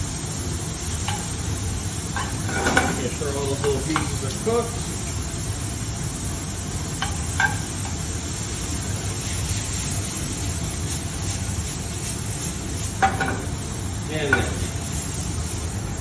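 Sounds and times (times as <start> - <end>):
steak sizzling in a pan: 0.0 - 16.0
utensil clinking on pan: 7.0 - 8.0.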